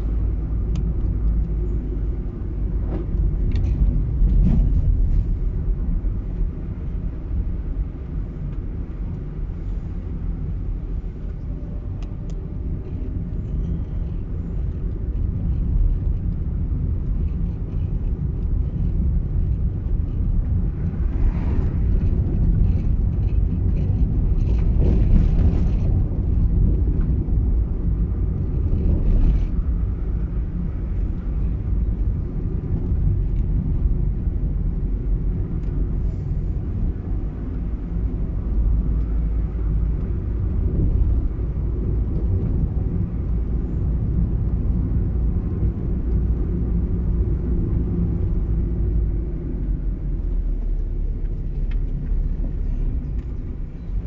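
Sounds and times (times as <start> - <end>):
car tyres and engine rumble: 0.0 - 54.0.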